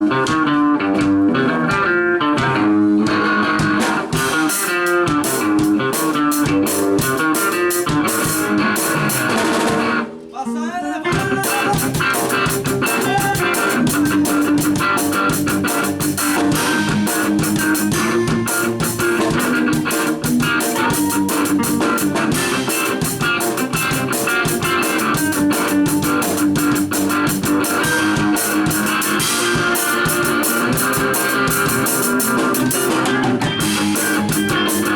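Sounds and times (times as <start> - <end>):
rock music: 0.0 - 34.9.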